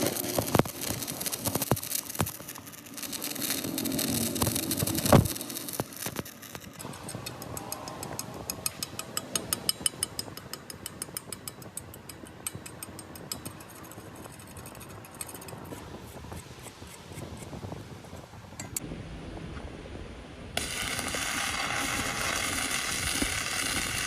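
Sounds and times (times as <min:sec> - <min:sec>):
rapid mechanical clicking: 0:00.0 - 0:15.9.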